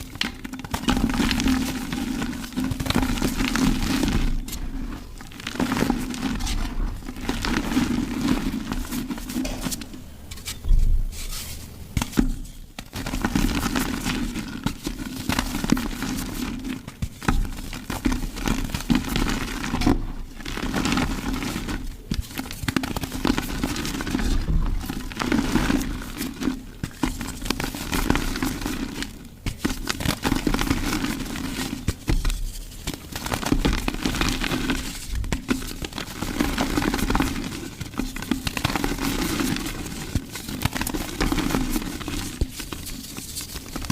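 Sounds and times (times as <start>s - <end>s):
mud crushed by hand crackling: 11.9s - 43.9s.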